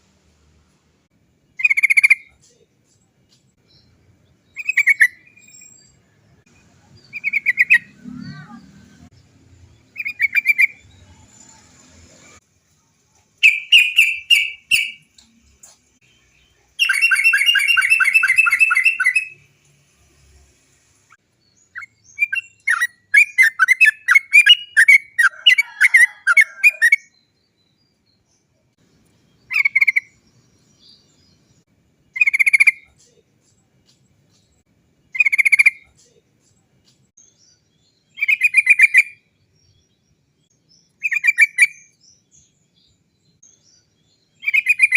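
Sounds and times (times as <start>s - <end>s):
bulbul chattering song: 1.5s - 2.7s, 6.5s - 8.9s, 9.7s - 11.7s, 13.2s - 19.5s, 28.8s - 31.5s, 32.1s - 42.8s, 43.4s - 44.9s.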